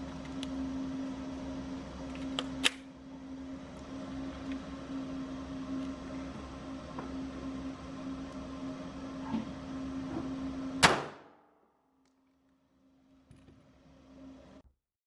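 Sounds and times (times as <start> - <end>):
steady hum: 0.0 - 11.7
pistol shot with ringing tail: 10.8 - 11.3.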